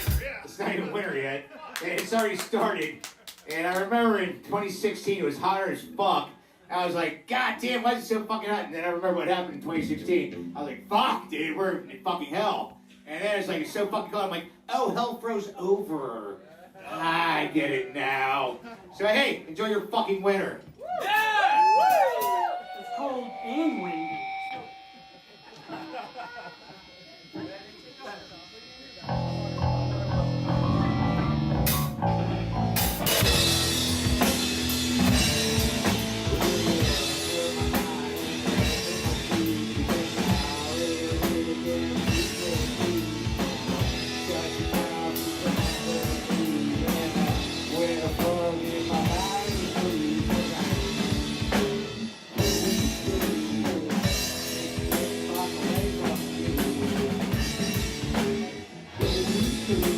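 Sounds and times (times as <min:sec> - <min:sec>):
drum kit: 0:00.0 - 0:01.0, 0:21.0 - 0:22.6, 0:23.4 - 0:59.9
electric guitar: 0:21.4 - 0:59.9
electric bass: 0:29.0 - 0:59.9.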